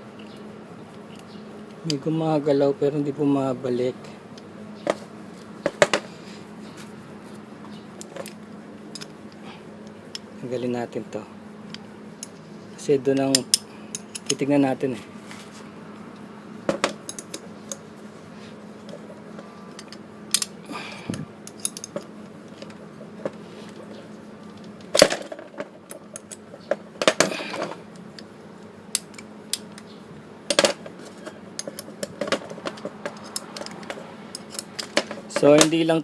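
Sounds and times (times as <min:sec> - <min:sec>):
metal parts and tools clinking: 0:08.0 - 0:09.4, 0:11.7 - 0:14.6, 0:16.7 - 0:17.8, 0:18.8 - 0:20.6, 0:21.4 - 0:28.3, 0:30.5 - 0:35.9.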